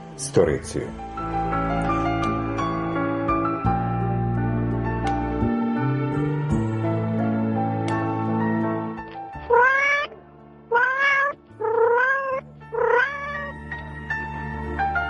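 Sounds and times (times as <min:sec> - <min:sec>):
soft background music: 0:00.0 - 0:15.0
mew-like animal calls: 0:09.5 - 0:13.5.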